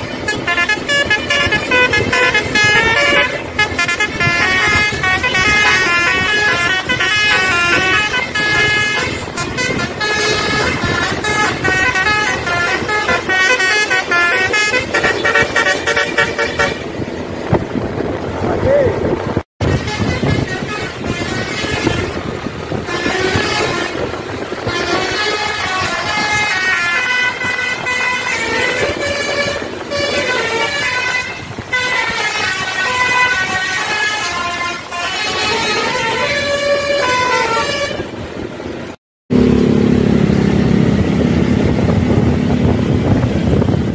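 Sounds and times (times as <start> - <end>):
traffic noise: 0.0 - 43.9
musical air horn melody: 0.2 - 17.0, 19.6 - 38.2.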